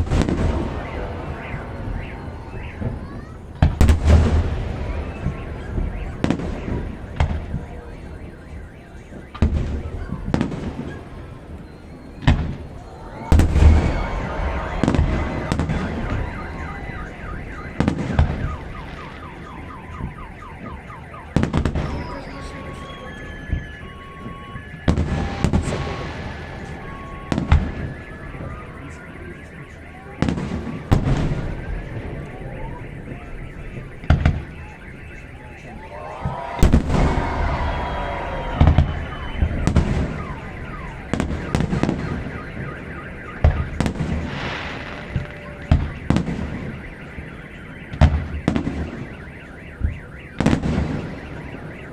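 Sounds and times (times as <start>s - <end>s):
wailing gliding tones: 0.0s - 6.1s, 12.5s - 33.8s, 34.5s - 47.2s
car alarm warbling and chirping: 0.0s - 51.9s
fireworks bangs: 0.0s - 51.9s.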